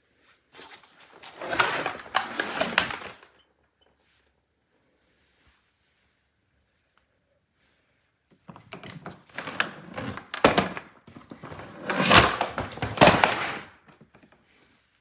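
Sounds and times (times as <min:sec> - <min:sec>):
suitcase clicks scrapes and knocks: 0:00.6 - 0:03.3, 0:08.5 - 0:14.2.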